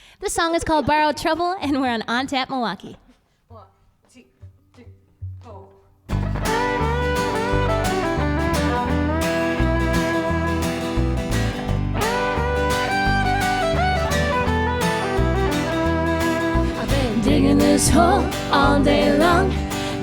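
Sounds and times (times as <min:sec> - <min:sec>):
acoustic guitar strumming: 0:06.1 - 0:20.0
fiddle melody: 0:06.1 - 0:20.0.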